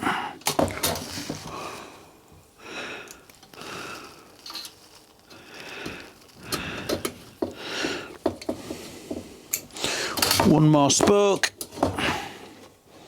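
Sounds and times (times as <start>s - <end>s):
breathing: 1.4s - 4.5s, 5.3s - 10.2s, 12.0s - 13.0s.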